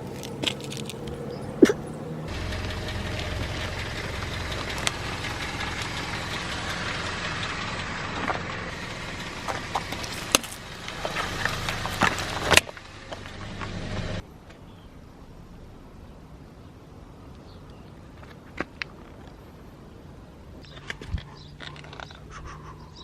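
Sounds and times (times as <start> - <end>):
objects cracking under tyres: 0.0 - 1.8, 8.0 - 13.8, 20.6 - 22.2
car engine running slowly: 0.0 - 15.0.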